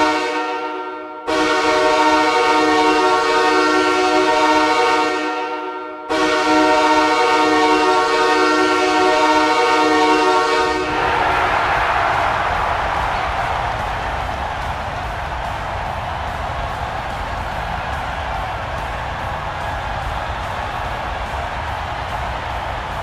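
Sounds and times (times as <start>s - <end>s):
arena goal horn blasts: 0.0s - 22.8s
loud rushing noise: 10.8s - 23.0s.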